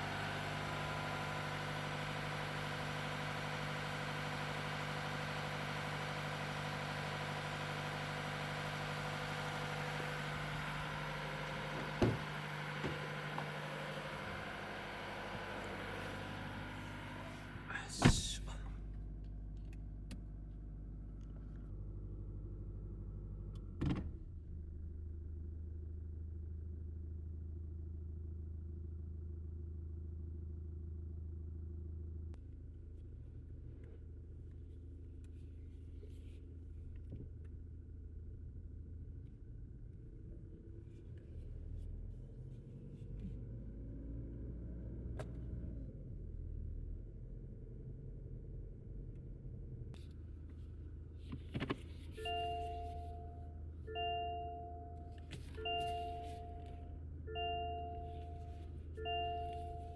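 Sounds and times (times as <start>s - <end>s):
car engine idling: 0.0s - 23.8s
short thud: 11.8s - 13.6s.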